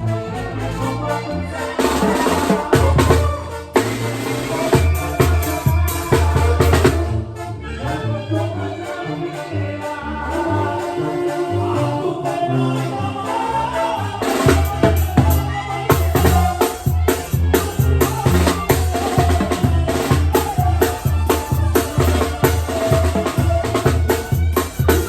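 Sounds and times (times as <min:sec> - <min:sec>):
band music: 0:00.0 - 0:25.0
bass drum beat: 0:02.4 - 0:07.2, 0:14.4 - 0:25.0.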